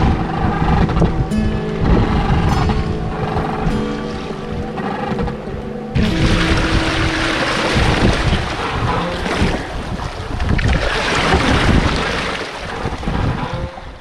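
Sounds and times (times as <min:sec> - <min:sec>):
wind on microphone: 0:00.0 - 0:14.0
sea rushing past boat: 0:06.0 - 0:14.0.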